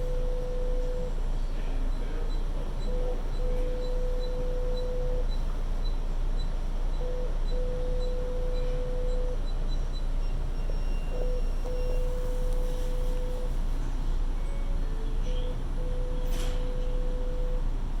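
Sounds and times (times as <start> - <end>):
train car low hum: 0.0 - 18.0
electronic beeping: 6.4 - 13.6.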